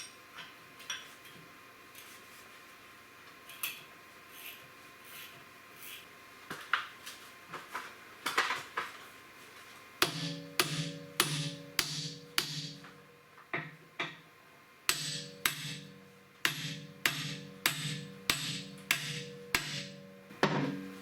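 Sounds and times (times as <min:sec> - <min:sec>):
hammer blows on metal: 0:10.0 - 0:12.9, 0:14.9 - 0:20.8.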